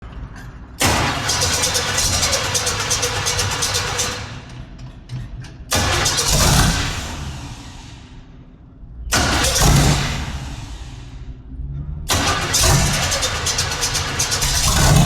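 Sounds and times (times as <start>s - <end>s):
engine revving with crackles: 0.8s - 4.3s, 5.7s - 7.6s, 9.1s - 11.0s, 11.7s - 15.0s.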